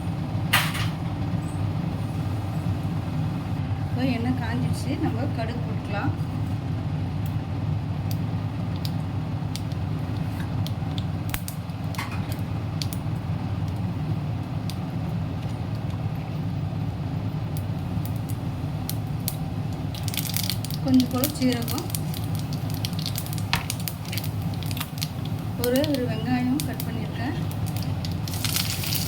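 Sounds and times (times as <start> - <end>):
steady low hum: 0.0 - 29.0
seeds popping in hot oil: 8.0 - 16.2, 17.5 - 29.0.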